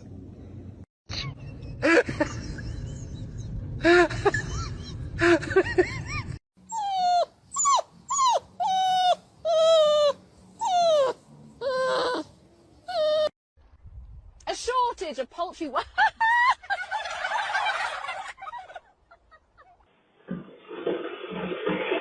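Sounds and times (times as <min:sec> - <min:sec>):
dog whining and whimpering: 0:06.6 - 0:13.4.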